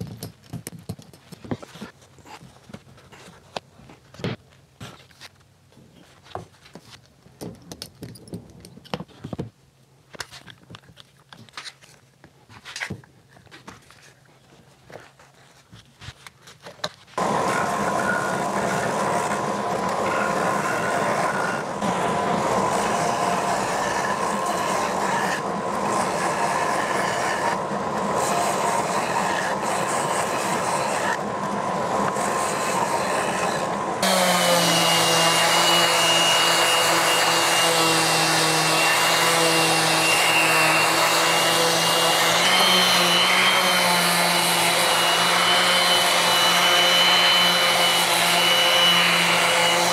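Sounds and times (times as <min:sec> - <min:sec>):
machine humming with high whine: 0:17.2 - 0:43.9
noisy power tool: 0:17.2 - 0:49.9.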